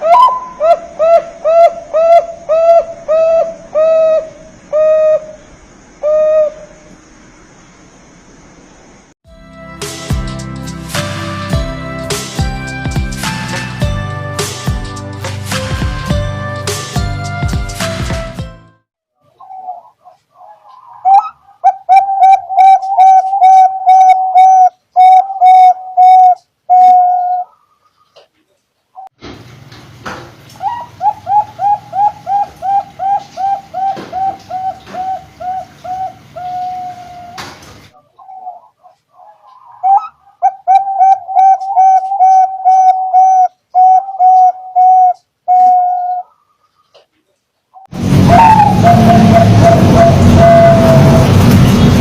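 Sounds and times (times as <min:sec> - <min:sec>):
dove cooing: 0:00.0 - 0:07.0, 0:19.3 - 0:27.6, 0:30.6 - 0:46.4, 0:48.2 - 0:51.3.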